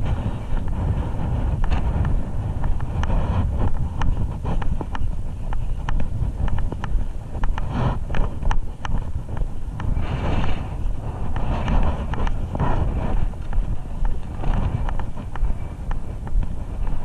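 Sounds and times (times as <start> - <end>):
wind buffeting microphone: 0.0 - 17.0
sharp irregular clicks: 0.5 - 17.0.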